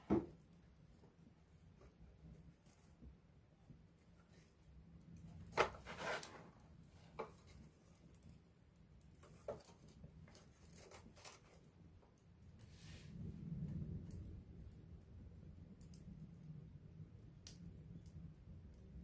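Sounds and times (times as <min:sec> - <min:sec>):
wood fire crackling: 0:00.0 - 0:19.0
faint low rumble: 0:12.0 - 0:19.0.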